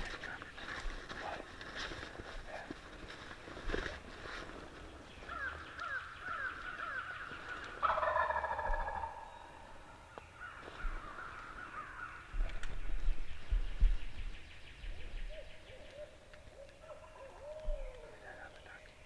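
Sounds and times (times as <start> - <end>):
turkey gobbling: 6.8 - 9.6.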